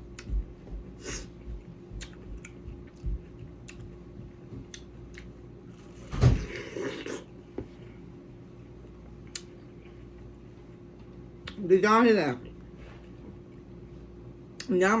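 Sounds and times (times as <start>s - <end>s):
watermelon being chewed: 0.0s - 8.0s.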